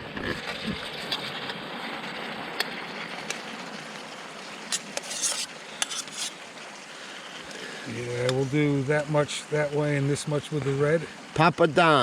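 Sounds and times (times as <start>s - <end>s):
stream rushing over rocks: 0.0s - 12.0s
clattering scrape: 4.7s - 6.4s.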